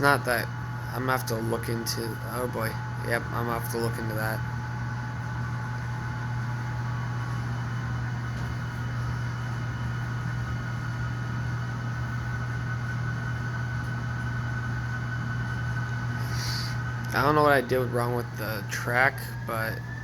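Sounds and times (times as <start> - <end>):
faint high whine: 0.0 - 20.0
model train low hum: 0.0 - 20.0.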